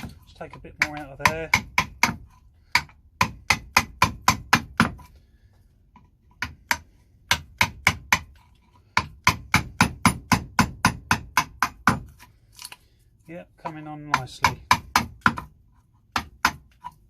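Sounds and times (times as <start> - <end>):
mallet striking a chisel: 0.0 - 5.1, 6.4 - 8.4, 9.0 - 12.2, 13.7 - 17.0.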